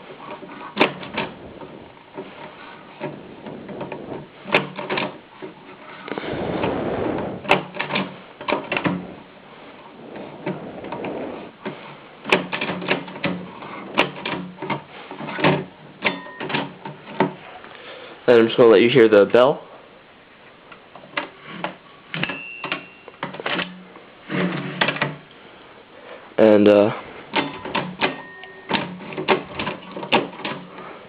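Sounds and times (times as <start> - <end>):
brief rasping rush: 5.9 - 8.3, 8.9 - 12.2.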